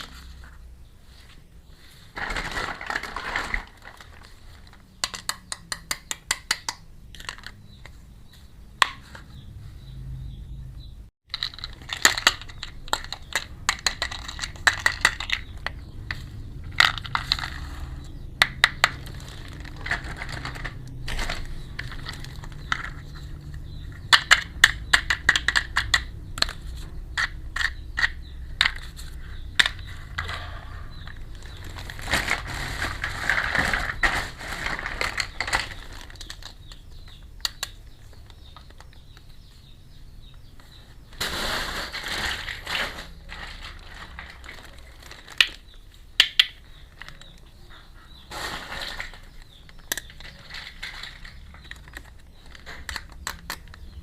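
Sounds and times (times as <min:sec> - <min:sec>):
packaging rustling: 0:02.0 - 0:05.2, 0:18.9 - 0:23.3, 0:31.1 - 0:36.7, 0:41.2 - 0:45.7
plastic toys clicking: 0:02.8 - 0:08.0, 0:11.3 - 0:33.9, 0:34.9 - 0:39.3, 0:42.4 - 0:47.5, 0:48.8 - 0:54.0.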